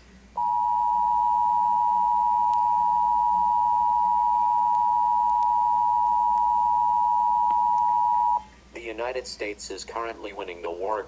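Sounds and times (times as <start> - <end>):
two-tone alert signal: 0.4 - 8.4.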